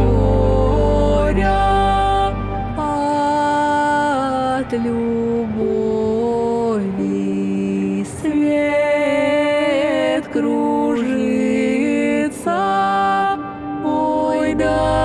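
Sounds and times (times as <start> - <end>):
voices singing a cappella: 0.0 - 15.0.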